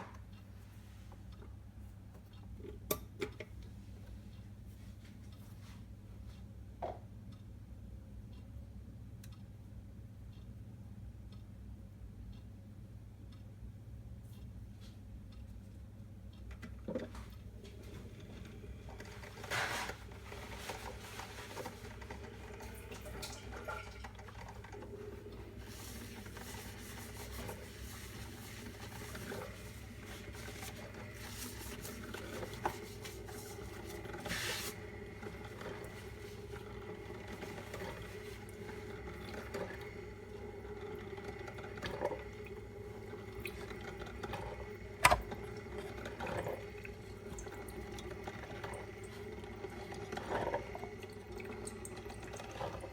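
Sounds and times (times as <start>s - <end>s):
coffee maker hum: 16.6s - 52.9s
water trickling and gurgling: 17.9s - 52.9s.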